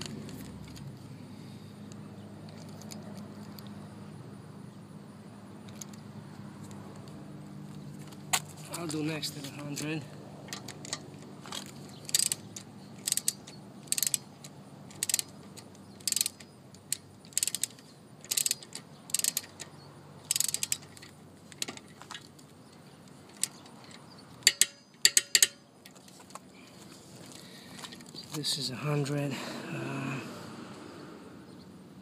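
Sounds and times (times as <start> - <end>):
ratchet wrench pawl rattling: 10.5 - 21.9, 23.3 - 25.6.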